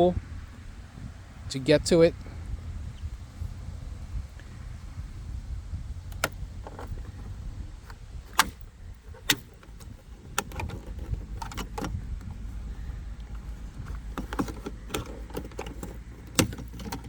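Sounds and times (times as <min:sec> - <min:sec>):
steady low rumble: 0:00.0 - 0:17.0
plastic trim clips snapping: 0:08.3 - 0:12.0, 0:14.1 - 0:17.0.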